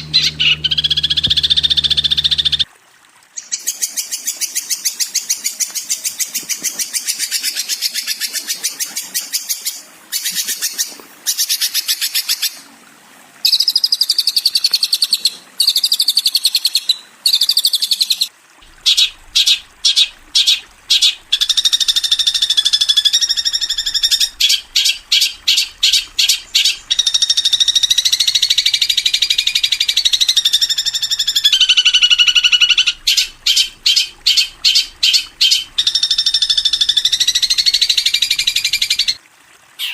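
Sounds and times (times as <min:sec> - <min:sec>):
bird chirps and trills: 0:00.0 - 0:02.7, 0:16.6 - 0:39.2
faint trickle of water: 0:00.0 - 0:39.9.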